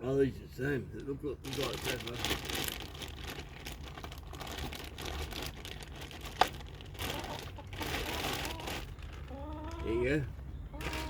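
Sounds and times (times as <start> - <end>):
packaging rustling and crinkling: 1.4 - 9.9.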